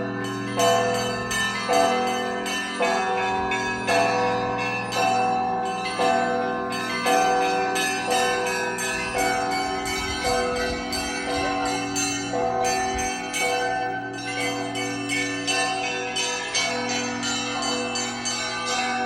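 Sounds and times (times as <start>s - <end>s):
hum of large bells: 0.0s - 19.0s
small church bells struck rapidly: 0.0s - 19.0s.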